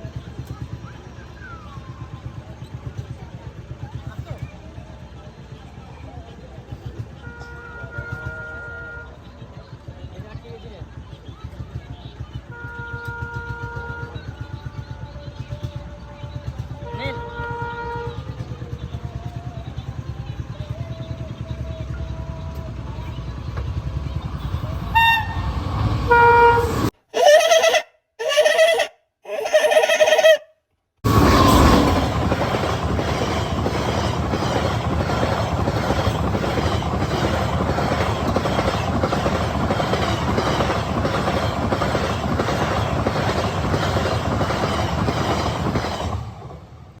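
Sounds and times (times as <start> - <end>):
train horn blasts: 7.2 - 9.2, 12.5 - 14.4, 16.8 - 18.4, 24.8 - 28.8
train wheels clattering over rails: 31.1 - 46.9.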